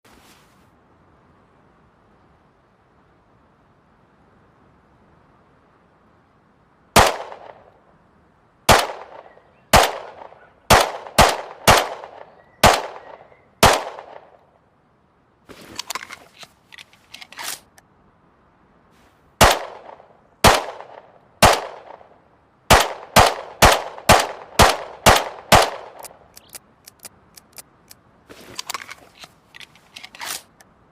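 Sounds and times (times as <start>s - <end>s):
pistol gunshots: 7.0s - 7.6s, 8.7s - 14.4s, 19.4s - 22.1s, 22.7s - 26.1s
light clicks: 26.0s - 30.7s.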